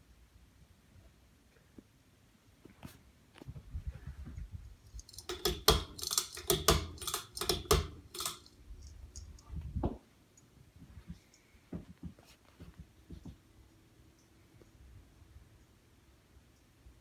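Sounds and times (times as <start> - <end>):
sharp clicks and knocks: 5.0 - 10.0.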